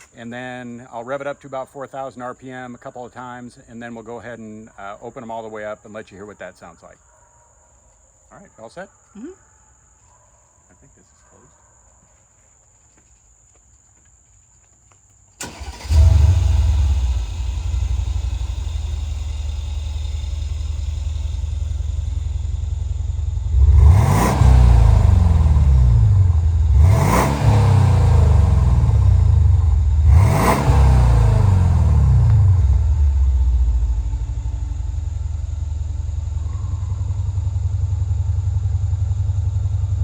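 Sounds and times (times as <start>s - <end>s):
car engine idling: 15.4s - 40.0s
car engine revving: 15.4s - 40.0s
car engine starting: 15.4s - 40.0s.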